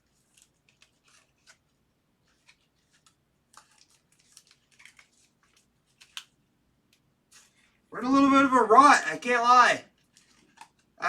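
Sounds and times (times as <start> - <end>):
trading cards and packaging rustling: 0.0 - 6.4, 7.3 - 7.8, 9.9 - 11.0.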